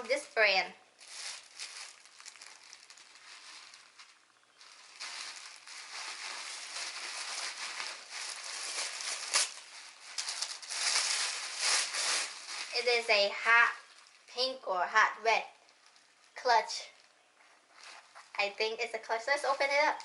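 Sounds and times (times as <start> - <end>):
packaging crinkling: 1.0 - 13.0, 13.7 - 14.3.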